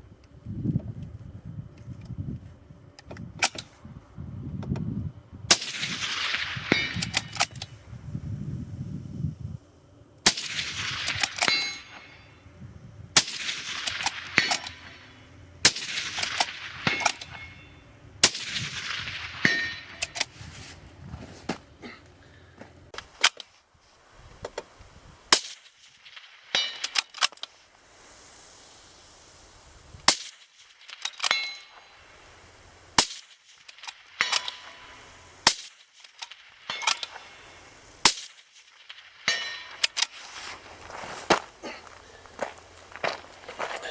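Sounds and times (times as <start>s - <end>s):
suppressed rifle shots: 5.5s - 7.6s, 10.2s - 12.2s, 13.2s - 17.6s, 18.2s - 20.3s, 23.0s - 23.6s, 24.4s - 40.6s
metallic clicks and pinging: 23.0s - 23.5s, 26.5s - 27.6s, 30.1s - 38.7s, 39.3s - 40.5s.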